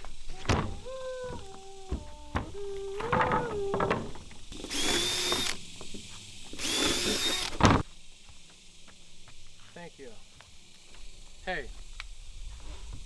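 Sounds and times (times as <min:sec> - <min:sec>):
power drill whining: 0:00.0 - 0:07.8.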